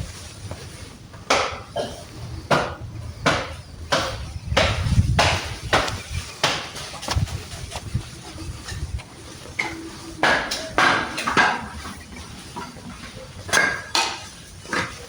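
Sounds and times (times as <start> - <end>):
hard objects knocking and clattering: 9.6 - 15.0.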